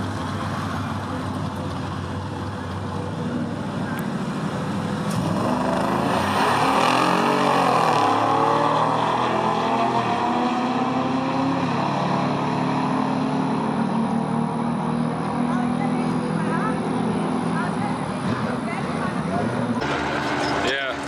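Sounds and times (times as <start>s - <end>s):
car engine running: 19.6s - 21.0s.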